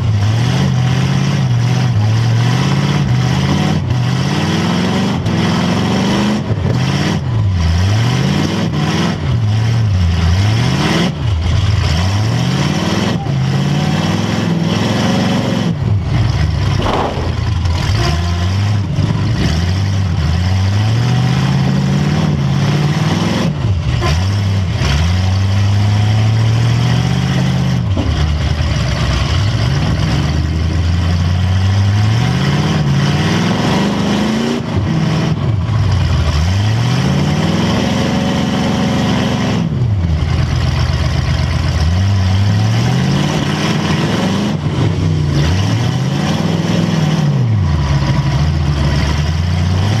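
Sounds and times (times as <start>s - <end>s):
car engine revving: 0.0s - 50.0s
sharp knocks and bangs: 16.6s - 18.2s.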